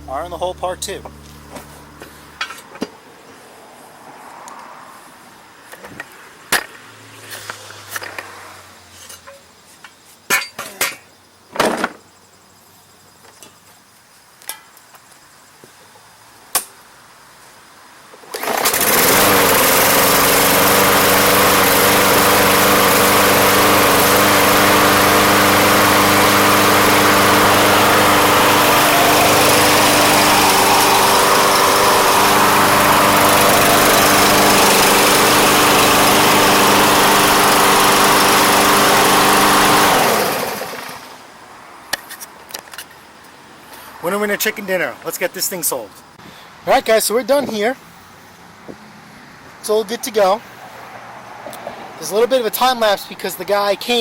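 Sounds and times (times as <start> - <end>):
lawn mower engine running: 0.0 - 2.6, 18.2 - 41.2.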